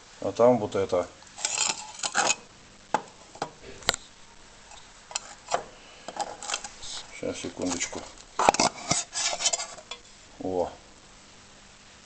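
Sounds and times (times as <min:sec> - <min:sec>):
tool scraping metal: 0:01.4 - 0:02.5, 0:05.1 - 0:07.1, 0:07.7 - 0:10.1.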